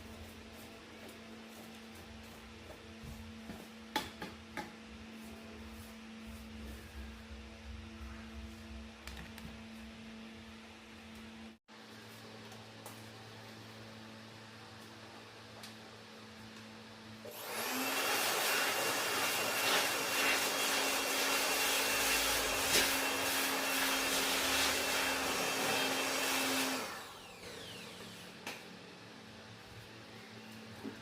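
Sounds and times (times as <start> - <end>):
electric fan motor whining: 17.2 - 29.4.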